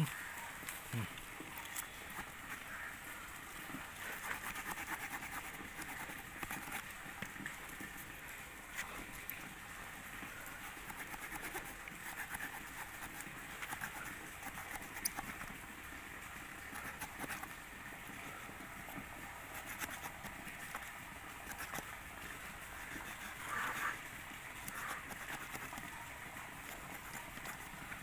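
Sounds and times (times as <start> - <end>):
saw rasping through branch: 4.0 - 7.0, 10.4 - 15.6, 16.5 - 17.6, 18.8 - 28.0.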